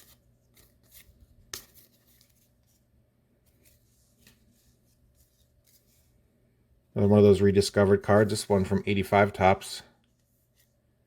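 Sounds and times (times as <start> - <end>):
cards rustling and clicking: 0.0 - 2.8
card snapping: 1.5 - 1.8.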